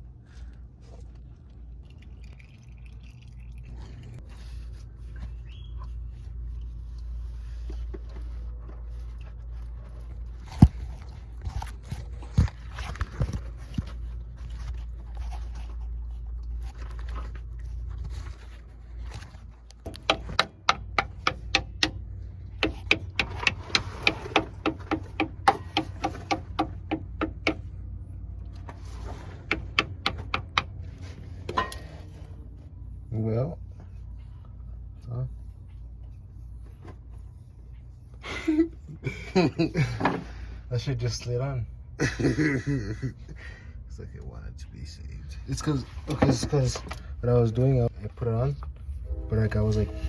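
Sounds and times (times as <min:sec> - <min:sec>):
low steady hum: 0:00.0 - 0:50.0
metal tool clicks and knocks: 0:19.9 - 0:27.6, 0:31.5 - 0:31.9.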